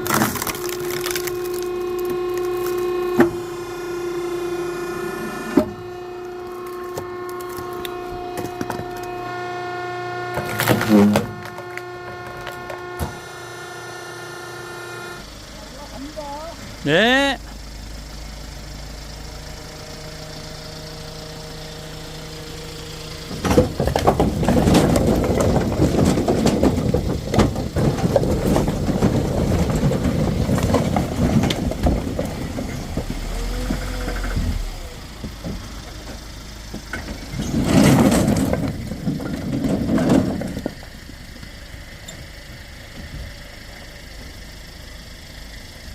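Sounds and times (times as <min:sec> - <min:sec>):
loud rumbling with knocks and clatters: 0:00.0 - 0:04.6, 0:15.2 - 0:45.8
truck engine idling: 0:00.0 - 0:45.9.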